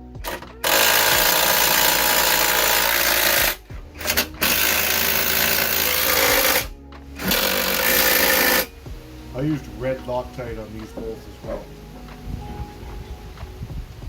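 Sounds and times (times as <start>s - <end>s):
power tool tightening nut: 0.2s - 8.7s.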